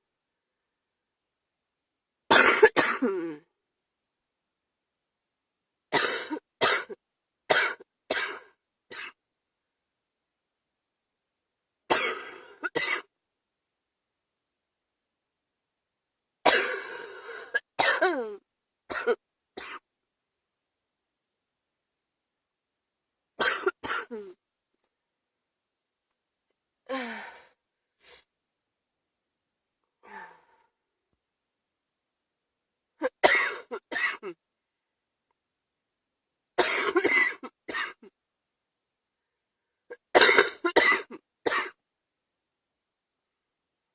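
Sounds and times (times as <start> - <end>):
person coughing: 2.3 - 3.4, 6.0 - 9.2, 11.9 - 13.1, 16.5 - 19.8, 23.4 - 24.4, 33.0 - 34.4, 36.6 - 38.1, 39.9 - 41.8.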